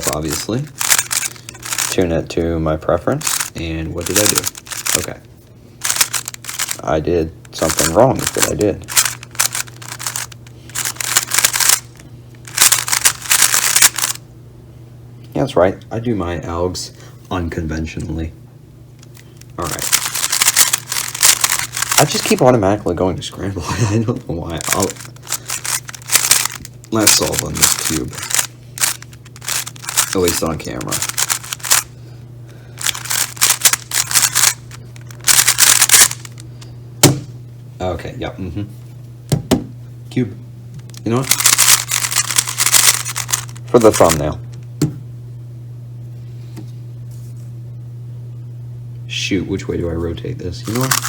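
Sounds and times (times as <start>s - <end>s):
speed cube clicking: 0.0s - 2.0s, 3.2s - 5.1s, 5.8s - 6.8s, 7.5s - 14.2s, 19.8s - 22.4s, 24.6s - 31.9s, 32.8s - 36.4s, 41.3s - 44.2s
steady low hum: 0.0s - 51.0s.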